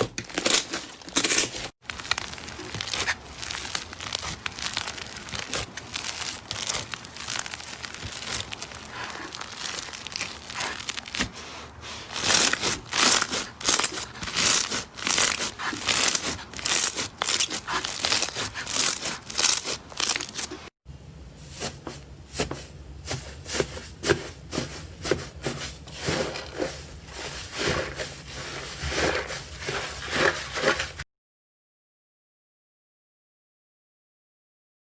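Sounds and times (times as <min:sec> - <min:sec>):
slime crackling and popping: 0:00.2 - 0:11.3, 0:12.1 - 0:20.5.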